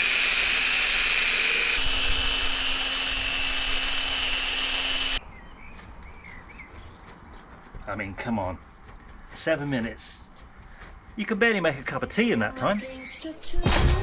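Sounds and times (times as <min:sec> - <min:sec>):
drill sanding plastic whine: 0:00.0 - 0:05.2.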